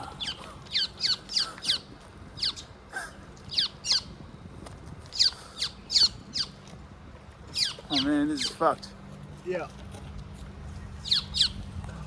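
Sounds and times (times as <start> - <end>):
birds squawking: 0.0 - 4.2, 5.1 - 6.6, 7.5 - 8.8, 10.8 - 11.7.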